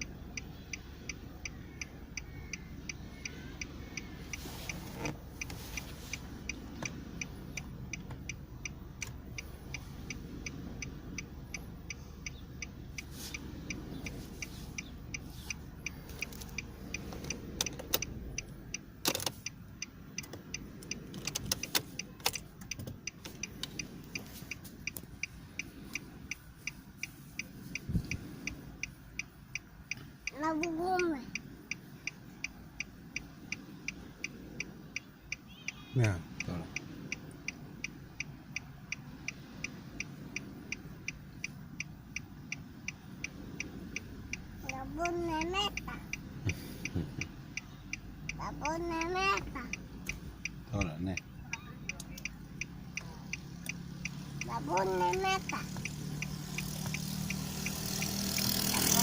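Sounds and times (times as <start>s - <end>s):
device ticking steadily: 0.0s - 59.0s.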